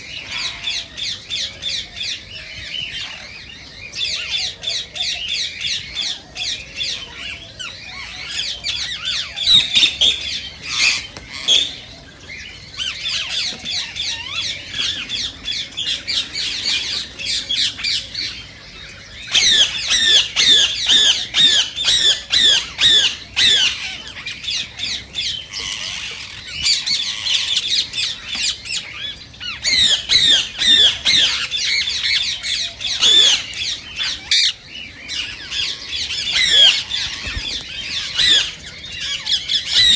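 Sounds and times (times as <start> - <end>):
parakeet squawking: 19.3 - 24.9, 29.0 - 39.9.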